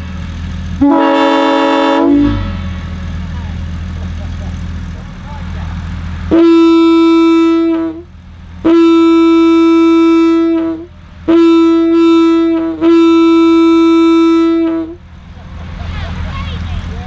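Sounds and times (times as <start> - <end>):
locomotive air horn blasts: 0.8 - 2.7, 6.3 - 15.0.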